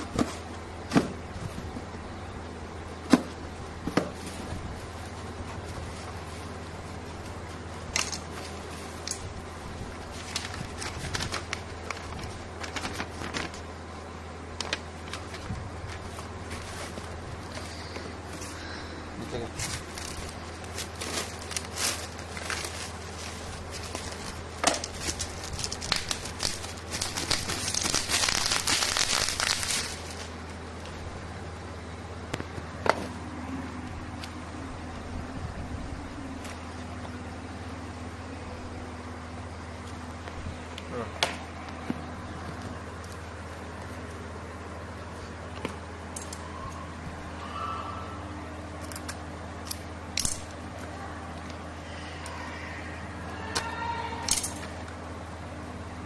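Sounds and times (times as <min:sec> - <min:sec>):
steady low hum: 0:00.0 - 0:56.0
packaging crinkling: 0:10.0 - 0:13.7, 0:19.4 - 0:30.5.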